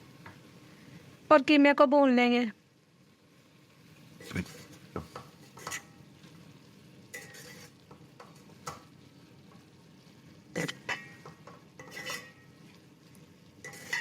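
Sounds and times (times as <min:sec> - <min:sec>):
meat sizzling in a pot: 0:00.0 - 0:14.0
utensil scraping a pot: 0:04.2 - 0:06.0, 0:07.1 - 0:08.0, 0:10.6 - 0:12.6, 0:13.6 - 0:14.0.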